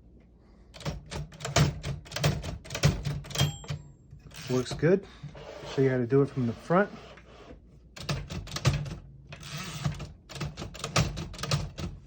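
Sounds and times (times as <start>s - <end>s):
typewriter clicks and clacks: 0.8s - 4.7s, 8.0s - 12.0s
typewriter carriage sliding: 4.3s - 6.0s, 9.4s - 10.1s.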